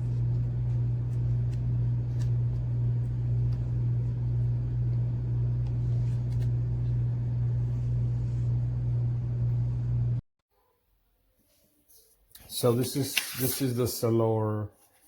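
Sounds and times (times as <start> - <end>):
low hum: 0.0 - 10.2
rumble: 0.0 - 10.2.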